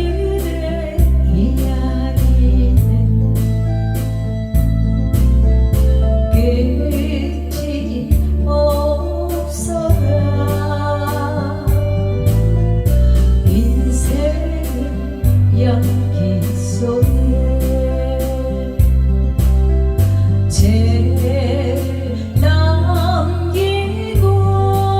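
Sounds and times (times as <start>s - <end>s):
person singing: 0.0s - 3.7s, 6.3s - 12.4s, 13.4s - 19.5s, 20.4s - 24.9s
electronic keyboard accompaniment: 0.0s - 24.9s.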